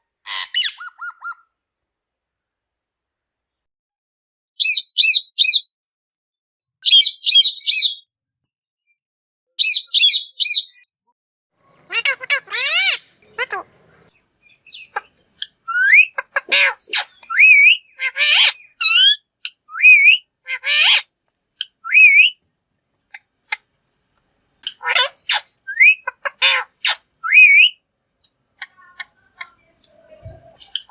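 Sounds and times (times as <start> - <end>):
parrot whistling and screeching: 0.3 - 1.4, 11.9 - 13.6, 15.6 - 22.4, 24.7 - 27.8.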